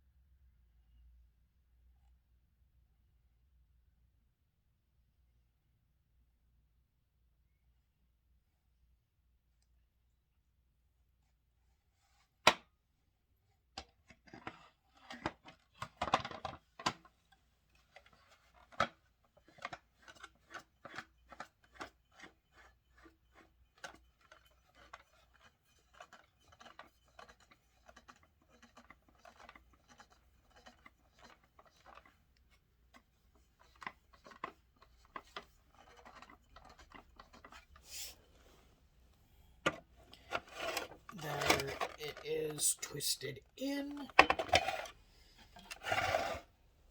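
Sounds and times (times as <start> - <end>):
plastic parts rubbing and clicking: 14.3 - 38.8, 39.6 - 42.2, 43.9 - 46.5
plastic scraping: 19.4 - 38.7, 39.6 - 42.2, 43.9 - 46.6.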